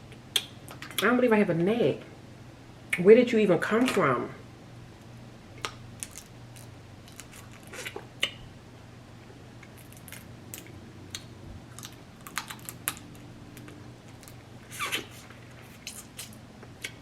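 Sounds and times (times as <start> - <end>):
faint low hum: 0.0 - 17.0
chewing with crunches and smacks: 5.6 - 8.4, 9.6 - 17.0.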